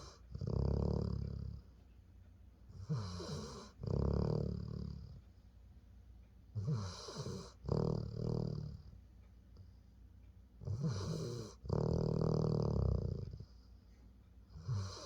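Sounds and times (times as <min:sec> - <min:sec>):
dog snoring: 0:00.0 - 0:01.7, 0:02.7 - 0:05.2, 0:06.5 - 0:09.0, 0:10.6 - 0:13.6, 0:14.5 - 0:15.0.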